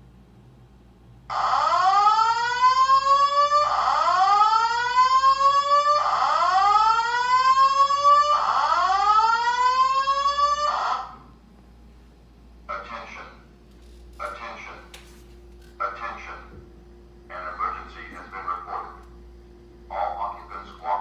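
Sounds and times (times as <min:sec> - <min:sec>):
fire alarm whoop tone: 0:01.3 - 0:11.2.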